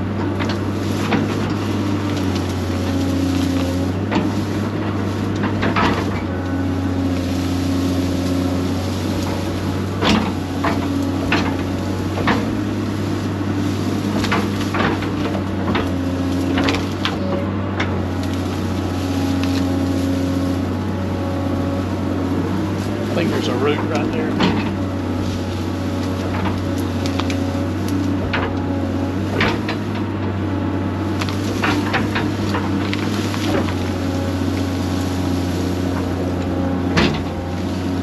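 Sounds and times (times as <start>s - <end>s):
excavator engine under load: 0.0s - 38.0s
sharp knocks and cracks: 8.3s - 12.7s, 14.0s - 17.2s, 24.3s - 30.1s.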